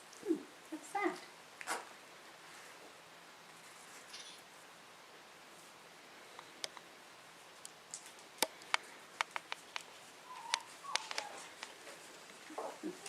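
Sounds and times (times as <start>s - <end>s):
sharp clicks and taps: 7.6s - 9.9s
faint squeaks: 10.2s - 13.0s.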